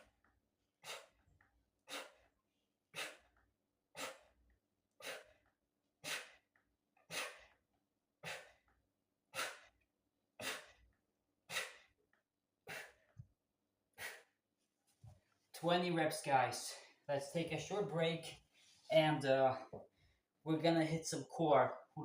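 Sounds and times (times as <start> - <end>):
man breathing out in sharp puffs: 1.9 - 2.3, 5.0 - 5.4, 6.0 - 6.4, 7.1 - 7.6, 8.2 - 8.7, 9.4 - 9.8, 10.4 - 10.9, 11.5 - 11.9, 12.7 - 13.1, 14.0 - 14.3.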